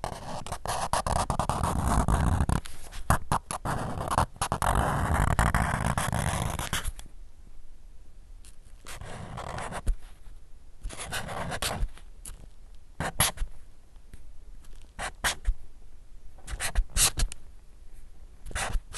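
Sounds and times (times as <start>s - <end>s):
marker scribbling on paper: 0.0s - 6.9s, 13.0s - 13.4s, 15.0s - 15.5s, 16.4s - 17.3s, 18.5s - 18.9s.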